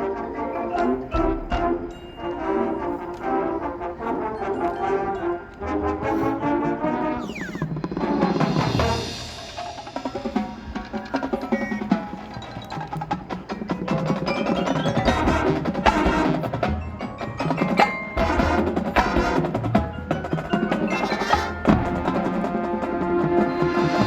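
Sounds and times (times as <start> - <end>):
mallet percussion playing: 0.5 - 6.3, 7.5 - 24.0
drum hits: 7.5 - 23.6.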